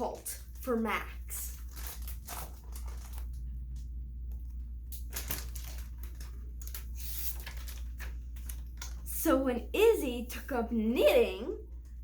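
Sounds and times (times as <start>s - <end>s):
paper pages rustling and turning: 0.0s - 9.1s
steady low hum: 0.0s - 12.0s.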